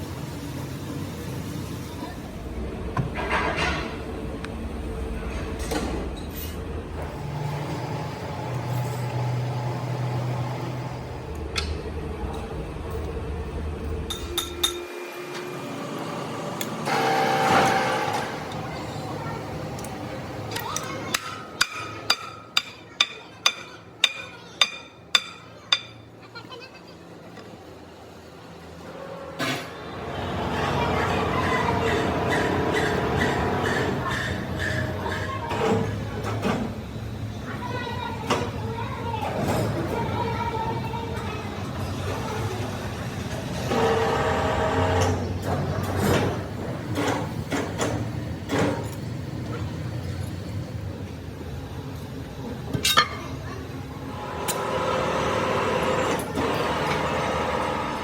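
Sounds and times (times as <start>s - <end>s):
hammer striking metal: 14.1s - 14.9s, 21.1s - 26.0s.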